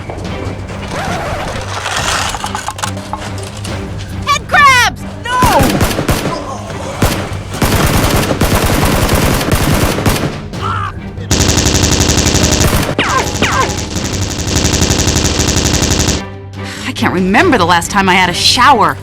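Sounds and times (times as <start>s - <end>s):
machine-gun fire: 5.6s - 6.3s, 7.0s - 10.4s, 11.3s - 16.2s.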